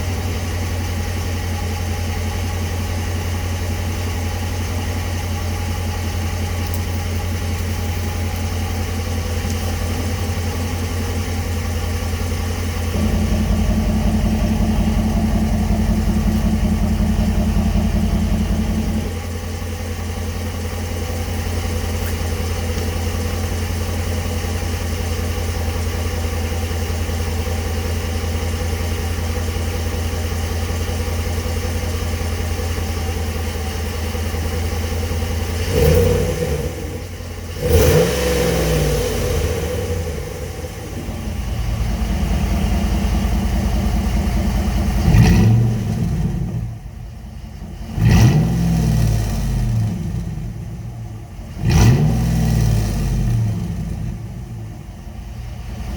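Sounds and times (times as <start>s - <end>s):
pickup engine idling: 0.0s - 55.9s
engine revving: 6.6s - 25.6s, 34.6s - 55.9s.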